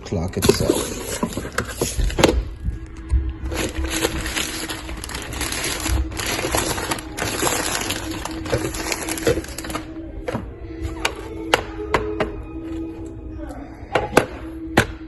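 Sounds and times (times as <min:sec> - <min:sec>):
packaging crinkling and rustling: 0:00.4 - 0:09.9.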